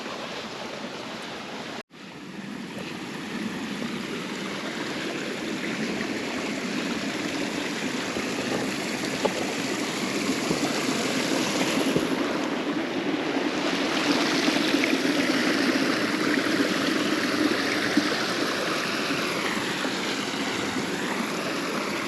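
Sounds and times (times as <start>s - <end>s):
stream flowing: 0.0s - 22.0s.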